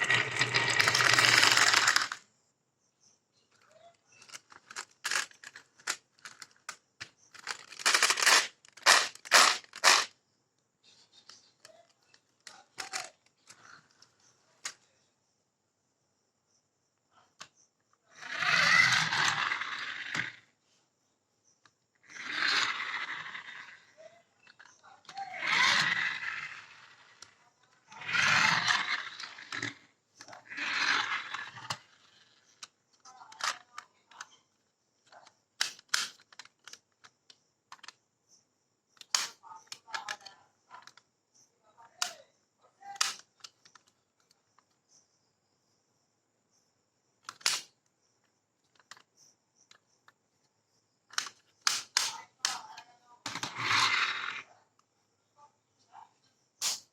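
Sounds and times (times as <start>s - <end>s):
marbles rolling rumble: 0.0s - 2.2s, 4.2s - 6.5s, 7.4s - 10.1s, 18.2s - 20.4s, 22.0s - 32.5s, 53.2s - 54.5s.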